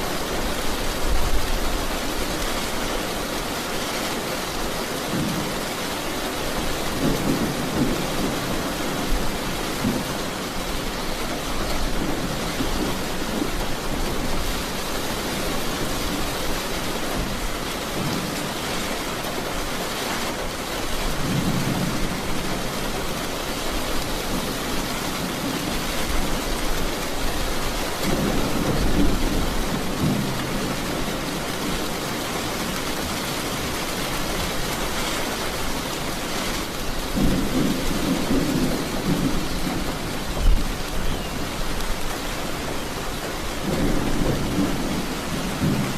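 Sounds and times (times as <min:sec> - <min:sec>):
heavy rain hissing: 0:00.0 - 0:45.9
low rolls of thunder: 0:37.1 - 0:41.8, 0:43.6 - 0:45.9
sharp thunderclap: 0:43.6 - 0:45.9.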